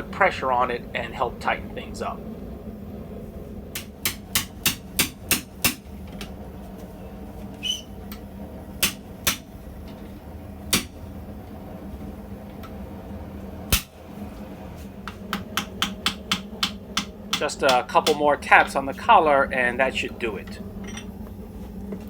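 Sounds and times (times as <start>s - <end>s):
hammer striking steel: 3.8s - 5.8s, 8.8s - 9.5s, 15.3s - 18.2s.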